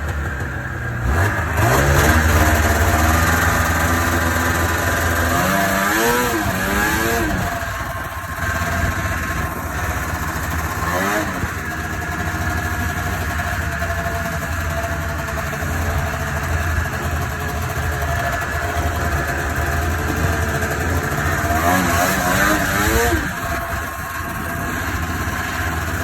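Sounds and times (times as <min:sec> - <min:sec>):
snowmobile engine revving: 0:00.0 - 0:26.0.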